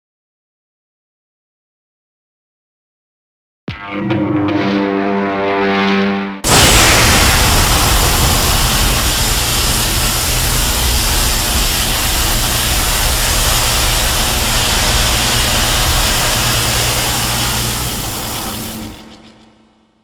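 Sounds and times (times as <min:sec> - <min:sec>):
low hum: 0:03.8 - 0:19.5
loud rushing hiss: 0:06.4 - 0:19.4.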